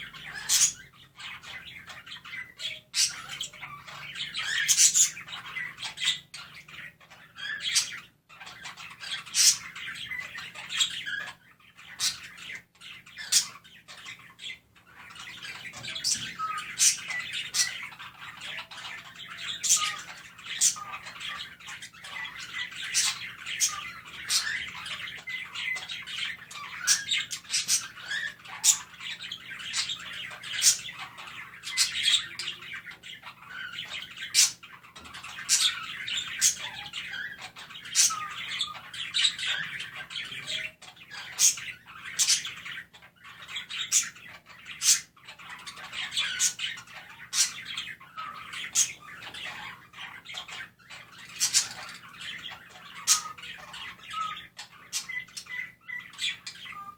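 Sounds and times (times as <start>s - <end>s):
budgerigars chirping and warbling: 0.0s - 56.9s.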